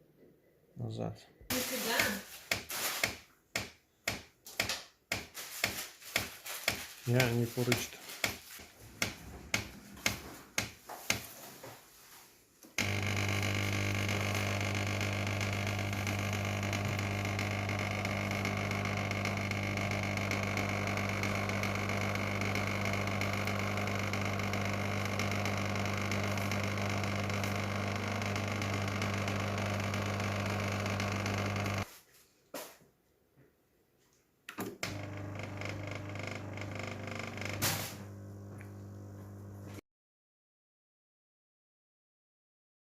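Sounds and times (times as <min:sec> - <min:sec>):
espresso machine pump buzzing: 0:12.8 - 0:31.9, 0:34.7 - 0:39.8.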